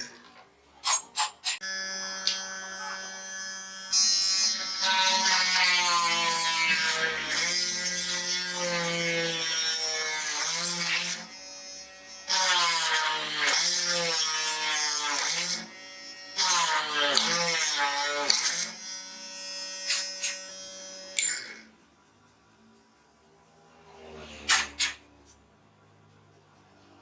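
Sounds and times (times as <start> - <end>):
electric motor buzzing whine: 1.6 - 6.8.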